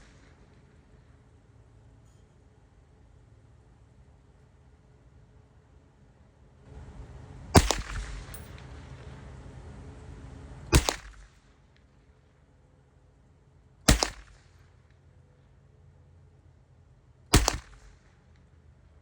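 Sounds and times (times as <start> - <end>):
rifle gunshots with echo: 7.6 - 8.7, 10.7 - 11.4, 13.9 - 14.6, 17.3 - 18.1.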